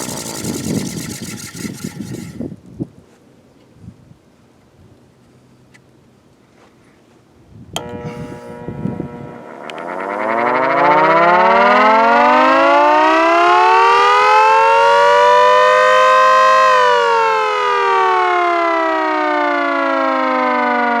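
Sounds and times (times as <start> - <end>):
siren wailing: 7.8 - 21.0.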